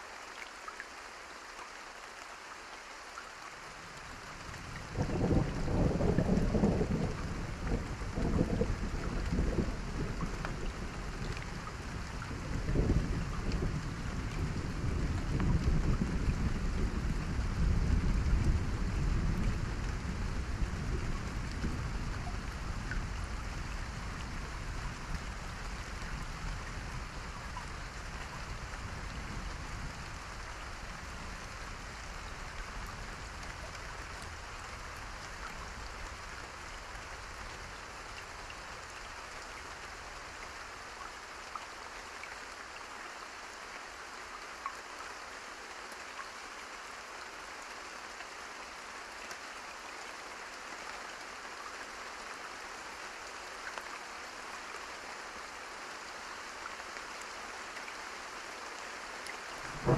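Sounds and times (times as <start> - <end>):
rain hissing: 3.0 - 42.8, 58.8 - 59.9
low thunder rumble: 4.6 - 34.1, 59.6 - 59.9.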